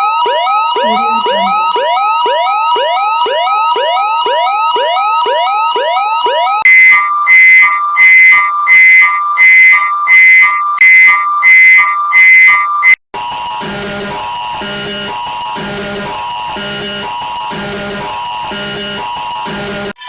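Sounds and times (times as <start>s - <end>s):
rising whoop alert signal: 0.8s - 1.8s
pulsing two-tone beep: 0.8s - 1.9s.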